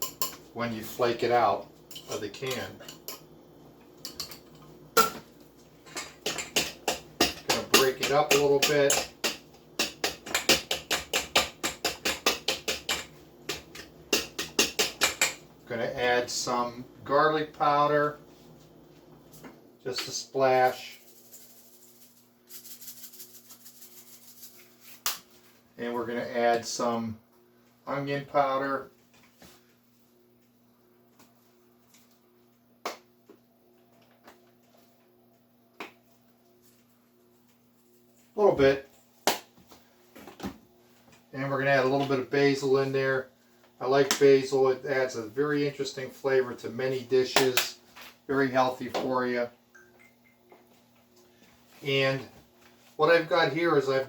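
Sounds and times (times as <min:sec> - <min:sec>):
faint steady hum: 0:00.0 - 0:54.0
utensil tapping against bowl: 0:06.2 - 0:15.4.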